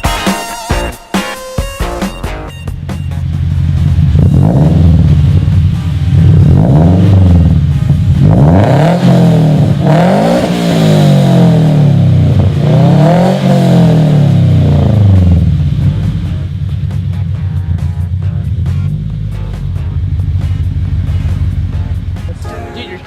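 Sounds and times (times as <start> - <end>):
car engine revving: 2.7 - 22.6.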